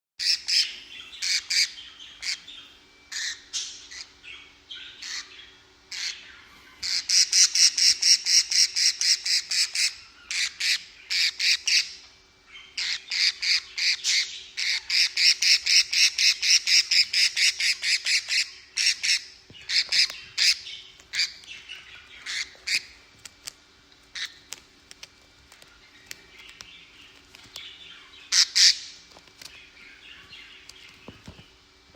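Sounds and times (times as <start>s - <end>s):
budgerigars squawking: 0.2s - 4.1s, 4.8s - 12.0s, 12.7s - 22.9s, 28.1s - 28.9s.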